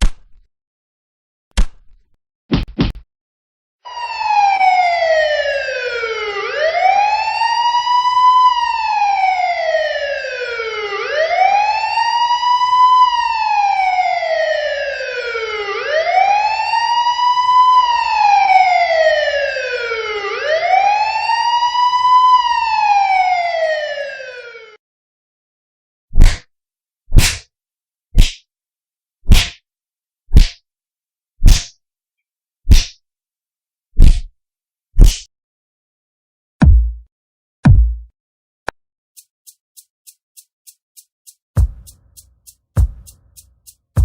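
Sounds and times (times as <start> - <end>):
police siren wailing: 3.9 - 24.8.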